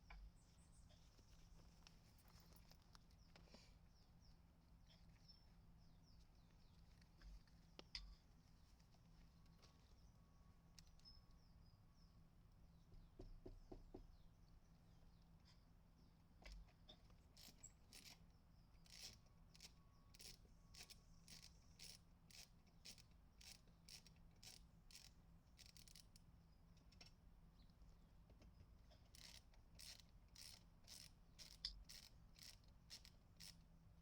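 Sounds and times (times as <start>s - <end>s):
faint crisp clicking: 6.8s - 8.2s.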